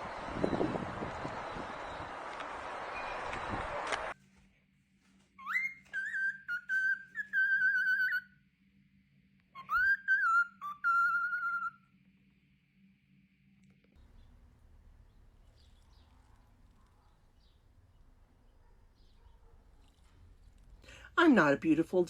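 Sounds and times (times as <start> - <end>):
pet bird whistling: 5.4 - 8.4, 9.6 - 11.8.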